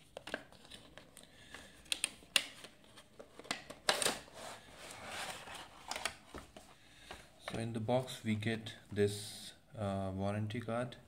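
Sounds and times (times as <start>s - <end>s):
cardboard and paper rustling: 2.5s - 6.8s.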